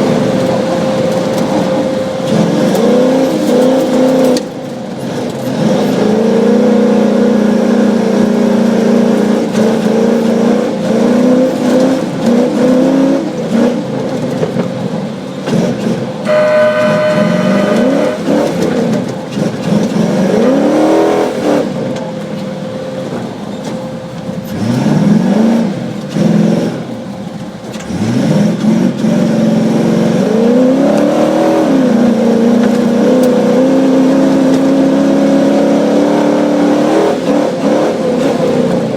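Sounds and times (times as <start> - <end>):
racing car engine revving: 0.0 - 22.2, 23.0 - 38.9
steady high tone: 16.2 - 19.0.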